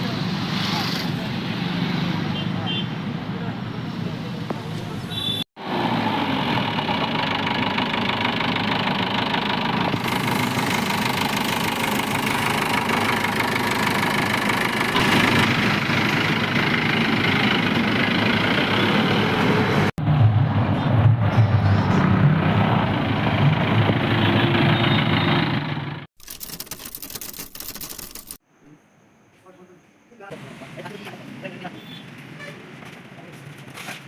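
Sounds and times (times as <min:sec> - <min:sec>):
diesel engine idling: 0:05.6 - 0:19.9, 0:22.0 - 0:26.1.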